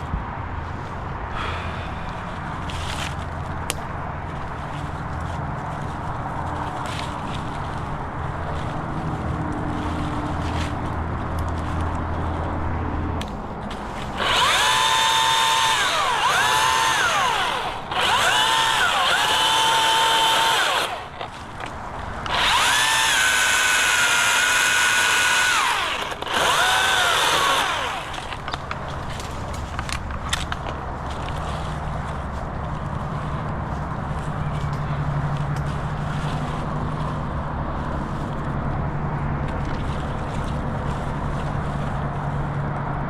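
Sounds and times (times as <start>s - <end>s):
electric chainsaw motor whine: 14.2s - 21.3s, 22.3s - 28.4s.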